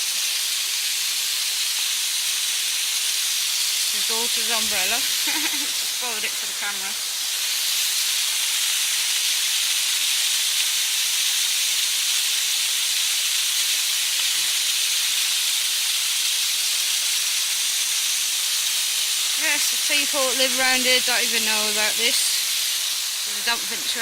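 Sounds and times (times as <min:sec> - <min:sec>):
rain falling: 0:00.0 - 0:24.0
waterfall rushing: 0:03.9 - 0:07.6, 0:19.3 - 0:24.0.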